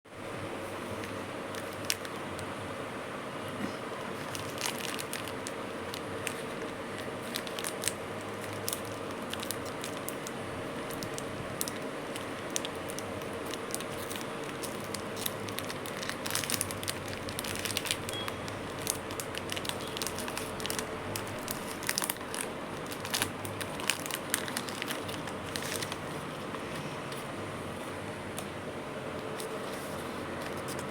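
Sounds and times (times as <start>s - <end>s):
steady background hum: 0.1s - 30.9s
wrapper crinkling and tearing: 4.2s - 26.9s.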